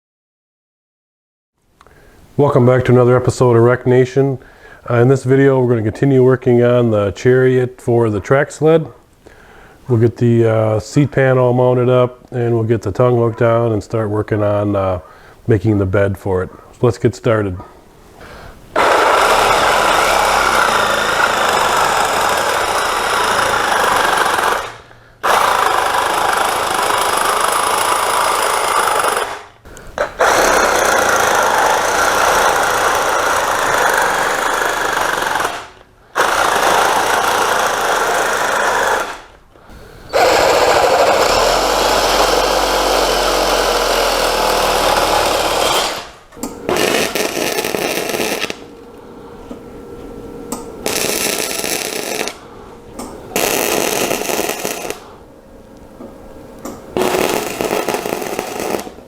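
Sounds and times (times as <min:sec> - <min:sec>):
welder buzzing: 0:18.1 - 0:59.0
welder sputtering bursts: 0:18.2 - 0:49.1, 0:49.8 - 0:55.3, 0:56.6 - 0:59.0.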